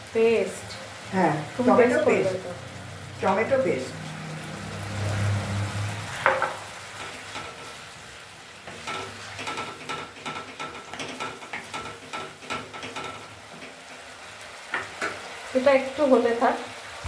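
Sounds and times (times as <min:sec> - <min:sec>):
light sizzle: 0:00.0 - 0:17.0
spatula scraping frying pan: 0:08.6 - 0:14.1.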